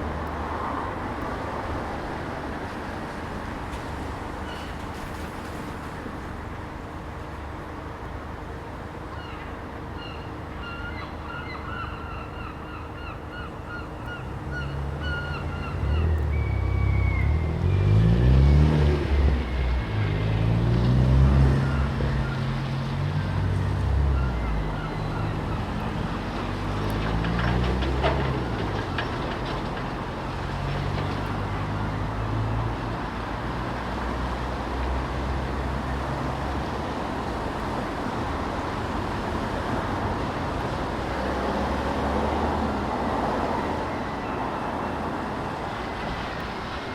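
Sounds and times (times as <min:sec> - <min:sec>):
steady traffic noise: 0:00.0 - 0:46.9
gulls calling: 0:09.1 - 0:18.0, 0:24.0 - 0:26.2.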